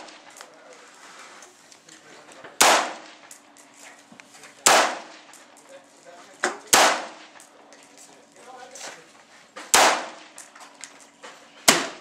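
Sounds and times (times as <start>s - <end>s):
rifle shots: 2.6s - 3.3s, 4.6s - 5.3s, 6.7s - 7.4s, 9.7s - 10.4s, 11.7s - 12.0s.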